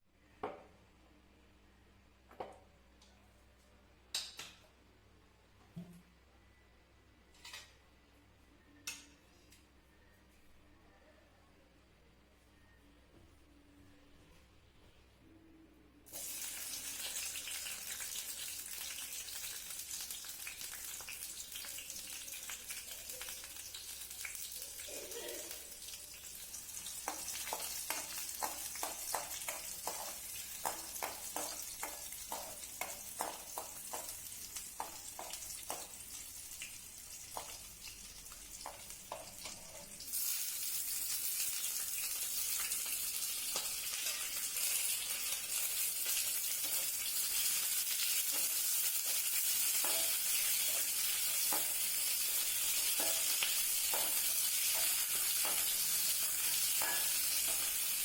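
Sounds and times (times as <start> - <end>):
food sizzling in oil: 16.1 - 58.0.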